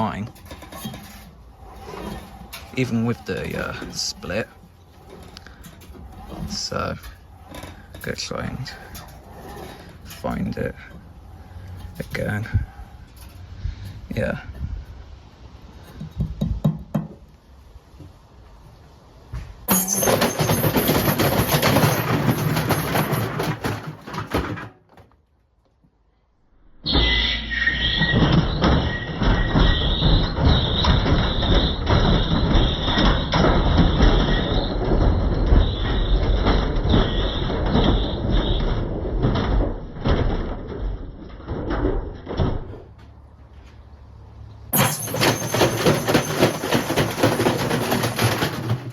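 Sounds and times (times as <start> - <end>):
washing machine cabinet rattling: 0.0 - 12.8, 19.7 - 24.9, 44.8 - 48.9.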